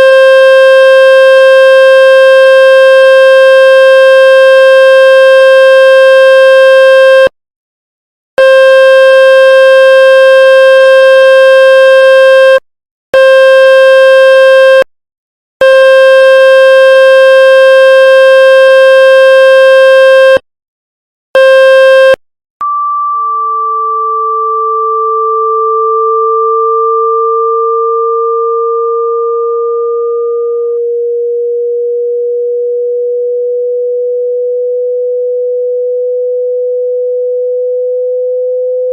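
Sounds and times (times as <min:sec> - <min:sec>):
harsh buzzing tone: 0:00.0 - 0:07.3, 0:08.4 - 0:12.6, 0:13.2 - 0:14.9, 0:15.6 - 0:20.4, 0:21.4 - 0:32.8
high pure steady tone: 0:22.1 - 0:36.6
low tone rising in pitch: 0:22.6 - 0:38.9.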